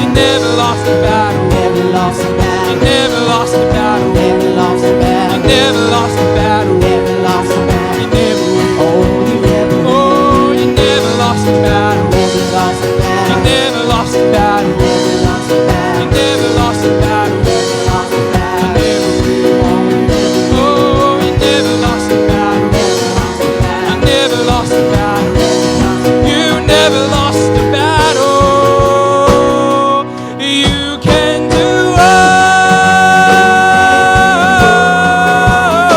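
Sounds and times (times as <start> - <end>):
worship band music: 0.0 - 35.9.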